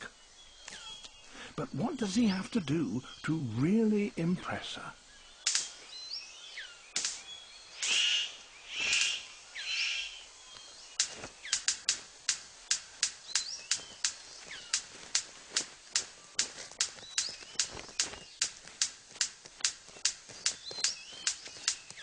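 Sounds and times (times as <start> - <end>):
forest birds chirping: 0.0 - 22.0
bird harsh hissing bursts: 4.8 - 22.0
bird sharp clicks: 5.4 - 5.9, 6.6 - 22.0.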